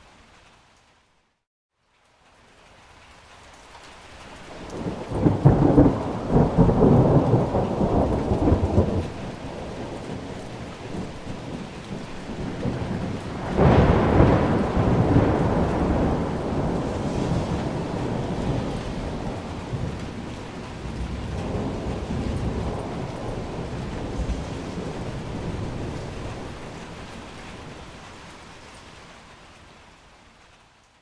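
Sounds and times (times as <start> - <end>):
rain hissing: 2.1 - 31.0
thunder rumbling: 4.5 - 28.4
thunder clap: 4.6 - 27.9.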